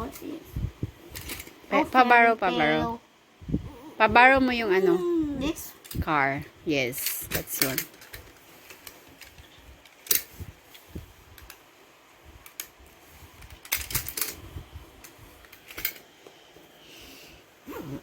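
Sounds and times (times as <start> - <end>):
plastic toys clicking and clattering: 1.2 - 1.5, 7.0 - 10.3, 13.4 - 14.4, 15.4 - 16.0.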